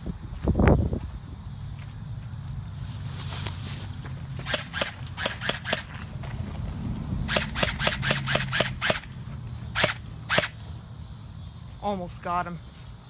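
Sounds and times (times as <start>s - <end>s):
airsoft gun shots: 4.4s - 6.0s, 7.3s - 9.2s, 9.8s - 10.6s.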